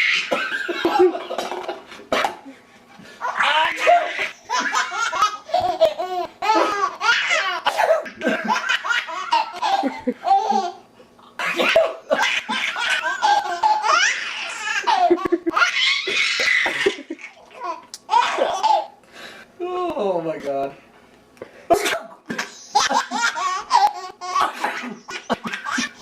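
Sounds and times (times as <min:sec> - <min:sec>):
baby giggling: 0:03.2 - 0:10.8, 0:11.5 - 0:19.0, 0:22.7 - 0:26.0.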